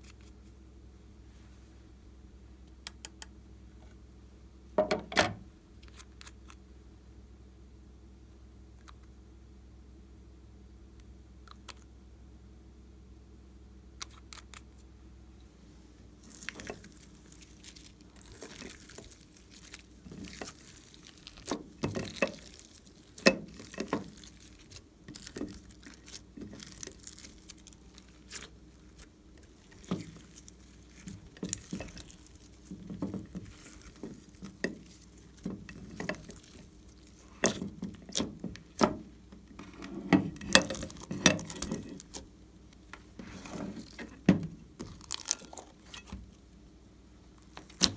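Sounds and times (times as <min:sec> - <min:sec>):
slime squishing by hand: 0:16.1 - 0:46.5, 0:47.2 - 0:47.9.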